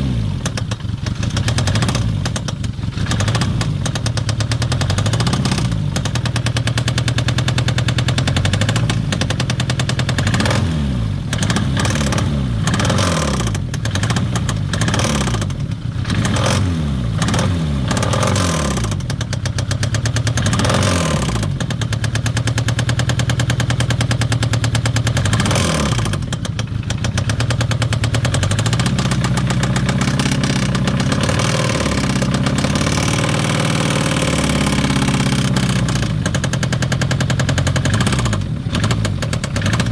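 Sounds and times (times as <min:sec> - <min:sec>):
car engine revving with a knock: 0:00.0 - 0:39.9.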